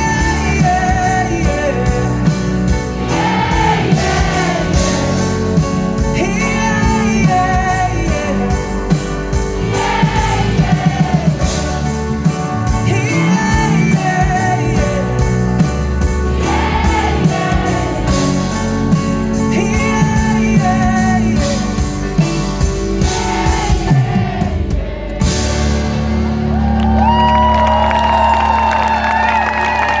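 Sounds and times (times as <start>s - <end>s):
person singing: 9.8s - 15.6s.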